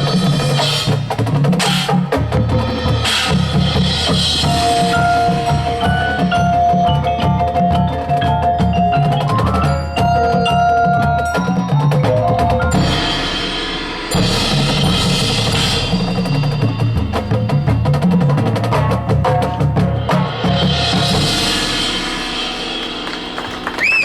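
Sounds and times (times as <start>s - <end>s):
bass drums: 0.0s - 24.0s
mallet melody: 3.8s - 23.8s
sharp drum strokes: 11.3s - 24.0s
cymbal wash: 12.7s - 18.0s.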